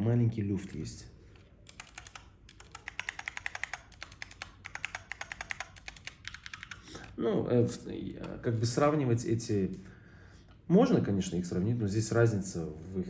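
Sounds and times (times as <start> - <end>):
mechanical keyboard typing: 1.6 - 7.2.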